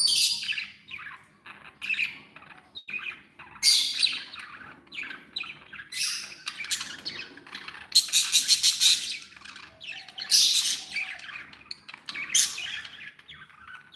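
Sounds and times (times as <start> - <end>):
budgerigars chattering and squawking: 0.0 - 13.9.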